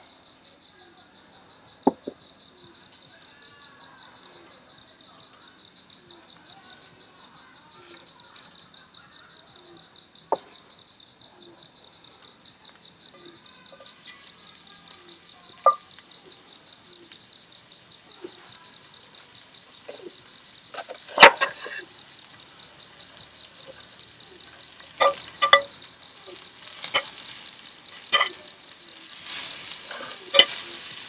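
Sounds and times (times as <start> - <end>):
crickets chirring: 0.0 - 31.0
sharp knocks and clinks: 25.0 - 25.8, 26.7 - 27.3, 28.0 - 31.0.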